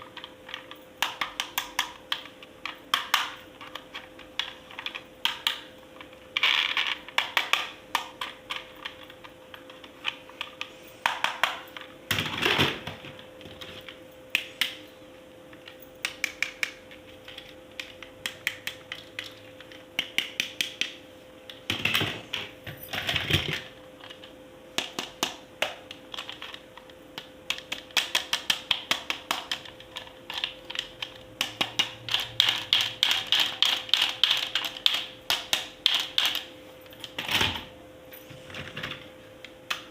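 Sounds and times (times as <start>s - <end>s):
plastic toy parts clicking and rattling: 0.0s - 11.9s, 22.9s - 37.2s
faint steady hum: 0.0s - 39.9s.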